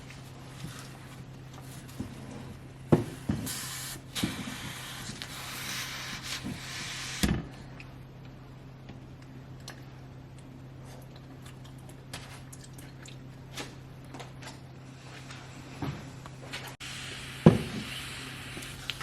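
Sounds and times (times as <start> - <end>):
low steady hum: 0.0 - 19.0
steady hiss: 16.8 - 19.0.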